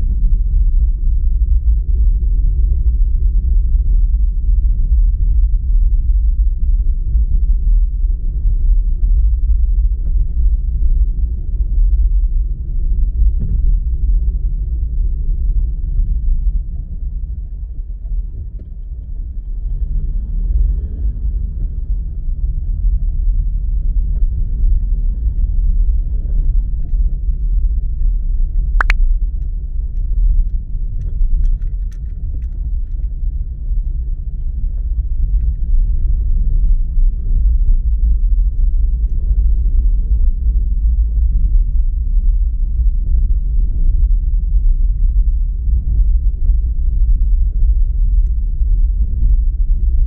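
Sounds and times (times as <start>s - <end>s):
car engine and tyre rumble: 0.0s - 50.0s
sharp click: 28.8s - 29.0s.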